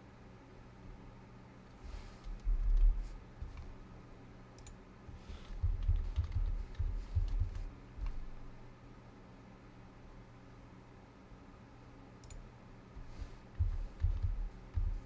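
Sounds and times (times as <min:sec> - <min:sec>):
typing on keyboard: 0:02.2 - 0:03.7, 0:04.6 - 0:08.3, 0:13.0 - 0:15.0.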